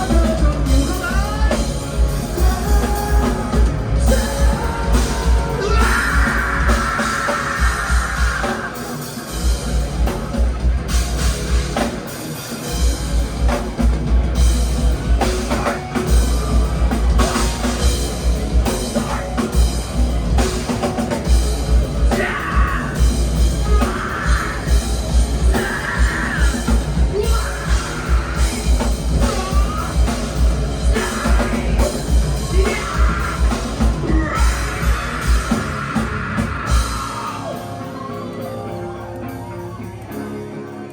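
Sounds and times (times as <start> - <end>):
rock band playing live: 0.0 - 40.9.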